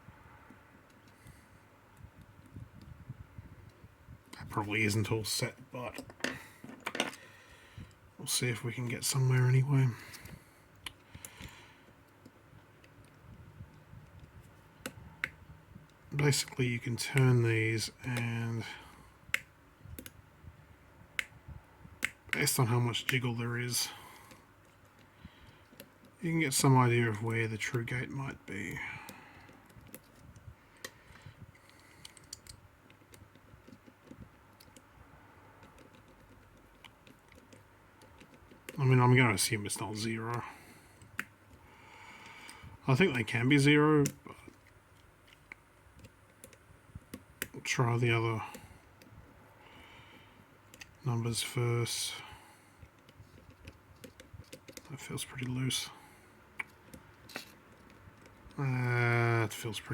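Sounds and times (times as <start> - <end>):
lock combination wheels clicking: 29.4 - 34.9, 35.5 - 38.8.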